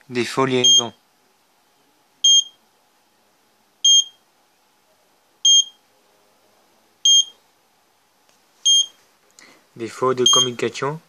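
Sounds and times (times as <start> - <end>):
high-pitched buzzer beeps: 2.2 - 2.6, 3.9 - 4.2, 5.5 - 5.8, 7.1 - 7.4, 10.2 - 10.6.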